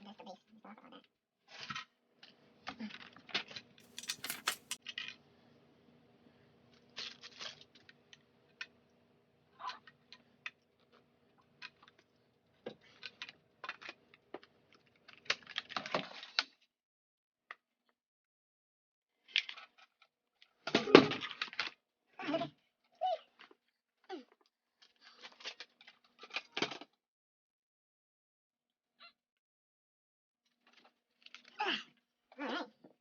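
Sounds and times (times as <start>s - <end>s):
plastic parts clicking and rattling: 3.9s - 4.8s.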